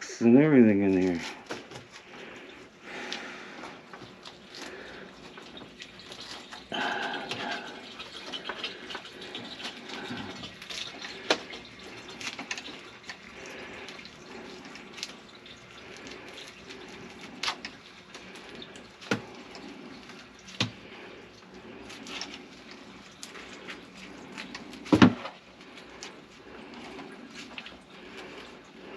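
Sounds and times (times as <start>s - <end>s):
water running in a sink: 0.8s - 28.9s.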